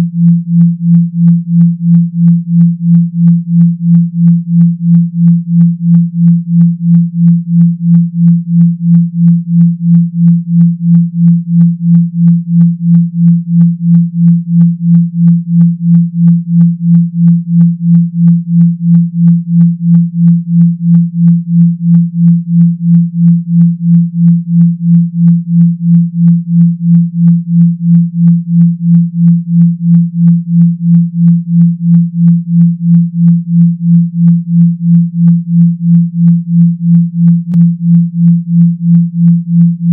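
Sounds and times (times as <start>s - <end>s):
pulsing deep synthetic hum: 0.0s - 39.9s.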